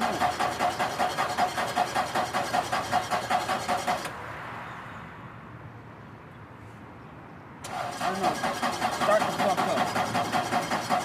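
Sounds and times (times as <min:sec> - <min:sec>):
starter motor cranking engine: 0:00.0 - 0:04.1, 0:07.6 - 0:11.0.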